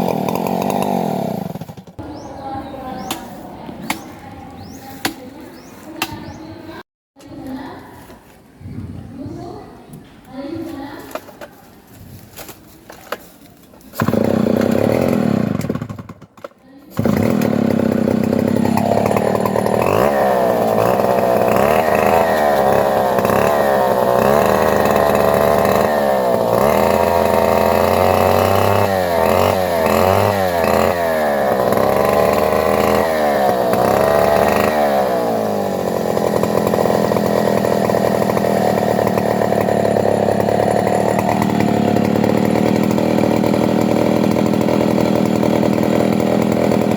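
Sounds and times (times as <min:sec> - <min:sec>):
chainsaw engine revving: 0:00.0 - 0:02.3, 0:13.8 - 0:16.3, 0:16.9 - 0:46.9.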